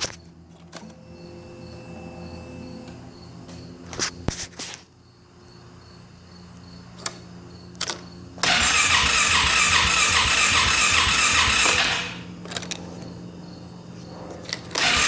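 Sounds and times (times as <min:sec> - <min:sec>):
starter motor cranking engine: 0:08.4 - 0:12.2, 0:14.6 - 0:15.0.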